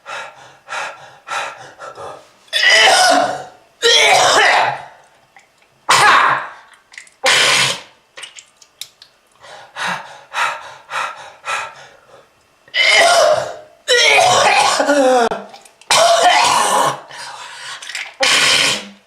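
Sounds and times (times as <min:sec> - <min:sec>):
person coughing hard: 0:02.6 - 0:04.9, 0:12.7 - 0:17.1.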